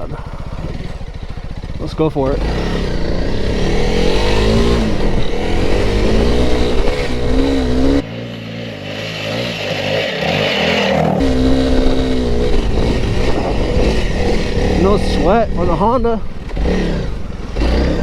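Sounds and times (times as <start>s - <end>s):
motorcycle engine working hard: 0.0s - 18.0s.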